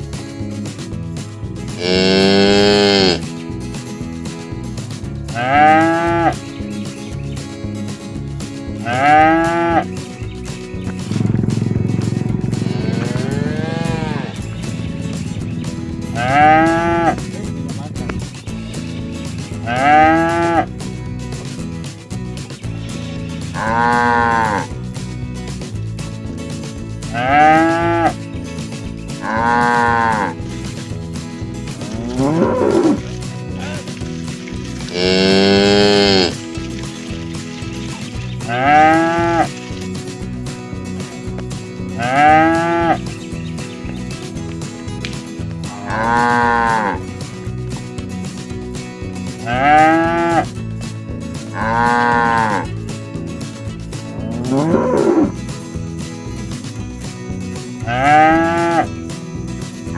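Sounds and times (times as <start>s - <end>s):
cattle mooing: 1.8s - 3.2s, 5.3s - 6.4s, 8.8s - 9.9s, 11.4s - 14.5s, 16.2s - 17.2s, 19.6s - 20.7s, 23.5s - 24.8s, 27.1s - 28.2s, 29.2s - 30.9s, 31.7s - 39.8s, 42.0s - 43.1s, 45.7s - 47.1s, 49.5s - 50.5s, 51.6s - 52.7s, 54.2s - 55.4s, 57.9s - 58.9s.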